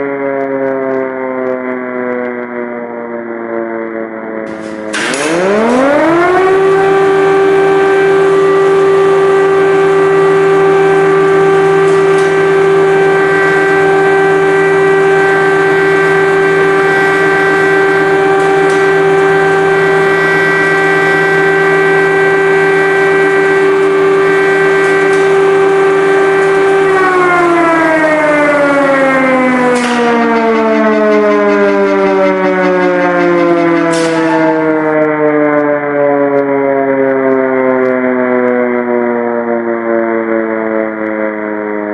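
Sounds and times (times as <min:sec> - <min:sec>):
air-raid siren wailing: 0:00.0 - 0:41.9
lower steady tone: 0:04.6 - 0:35.1.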